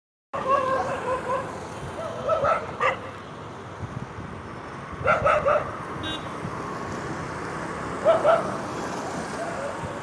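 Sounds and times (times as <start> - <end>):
dog barking: 0.4 - 3.2, 5.0 - 5.8, 8.0 - 8.6.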